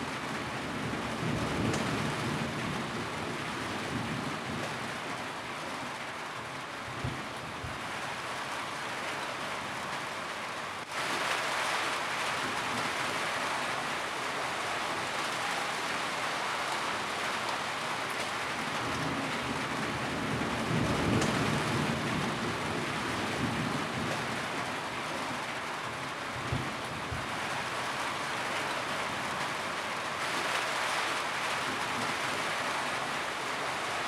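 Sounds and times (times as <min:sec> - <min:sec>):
heavy rain on a roof: 0:00.0 - 0:34.0
thunder rumble: 0:18.7 - 0:24.6.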